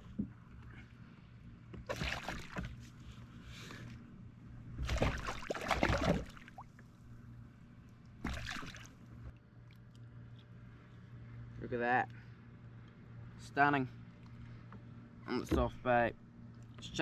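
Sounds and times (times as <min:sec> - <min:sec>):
water splashing: 0:01.9 - 0:02.8, 0:04.8 - 0:06.9, 0:08.2 - 0:09.0.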